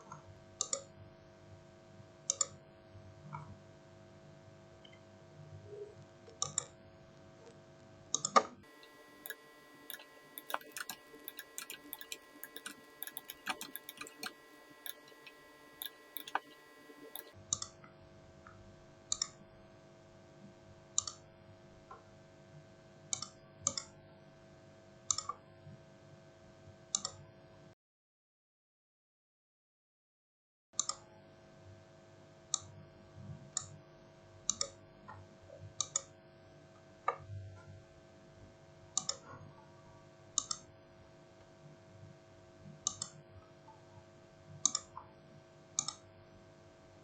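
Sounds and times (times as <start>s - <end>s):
faint steady hum: 0.1s - 23.8s
irregular sharp clicks: 8.2s - 17.7s, 40.4s - 40.6s, 45.8s - 46.0s.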